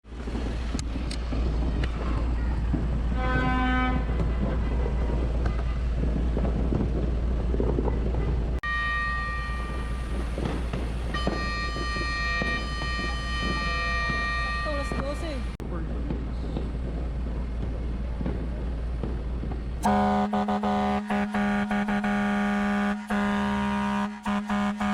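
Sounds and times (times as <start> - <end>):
steady low rumble: 0.0 - 8.7, 9.4 - 23.7
air horn long high blast: 3.2 - 5.1, 8.6 - 10.2, 11.2 - 15.2, 19.8 - 24.9
short low horn toot: 19.8 - 24.9.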